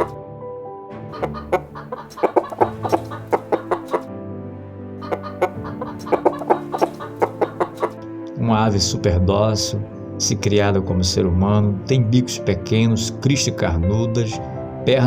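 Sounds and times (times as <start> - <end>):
chickens clucking: 1.1 - 4.1, 5.0 - 8.0.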